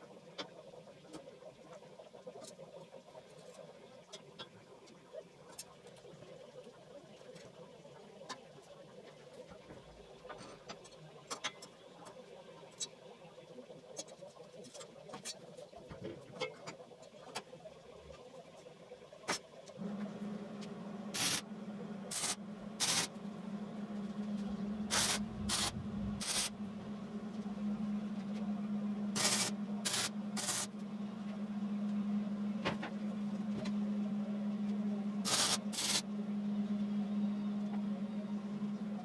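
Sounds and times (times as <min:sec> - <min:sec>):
steady hum: 0:19.7 - 0:39.0
welder hissing bursts: 0:24.9 - 0:26.5.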